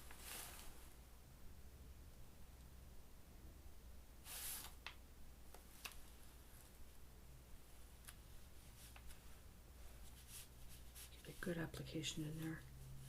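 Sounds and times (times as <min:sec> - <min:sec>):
paintbrush swishing on paper: 0:00.0 - 0:00.9, 0:04.2 - 0:04.8, 0:08.4 - 0:13.0.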